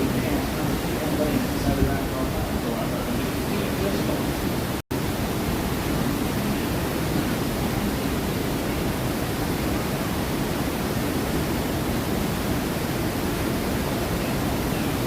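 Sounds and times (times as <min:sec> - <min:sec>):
rushing falling water: 0:00.0 - 0:15.0.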